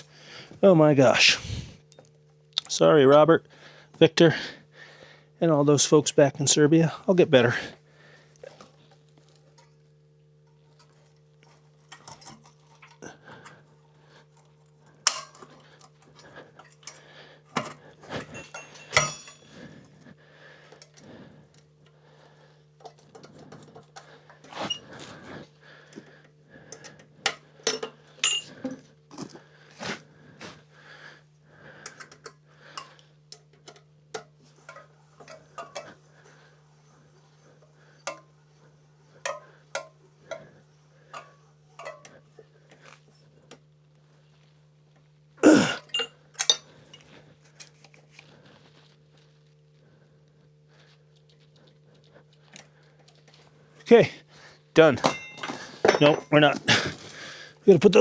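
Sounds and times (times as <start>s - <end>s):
metal tools clinking: 17.6s - 19.8s, 24.4s - 25.0s, 27.7s - 28.8s, 45.4s - 47.8s, 54.9s - 57.2s.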